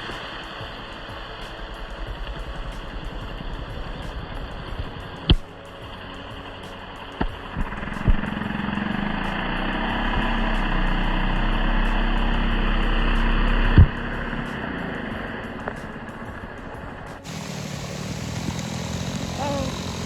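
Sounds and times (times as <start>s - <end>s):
chainsaw running under load: 17.3s - 20.0s.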